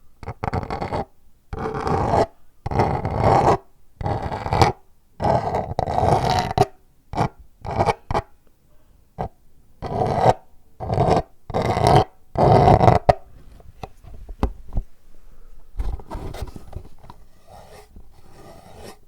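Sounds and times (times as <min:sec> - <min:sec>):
scratching on paper: 0:00.2 - 0:08.3, 0:09.2 - 0:13.2, 0:15.8 - 0:19.0.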